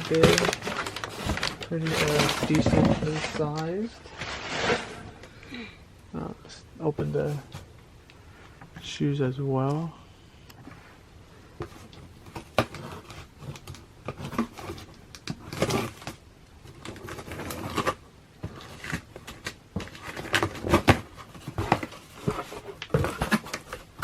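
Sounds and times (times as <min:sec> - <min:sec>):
cardboard rustling scrapes: 0:00.0 - 0:05.3, 0:10.6 - 0:24.0.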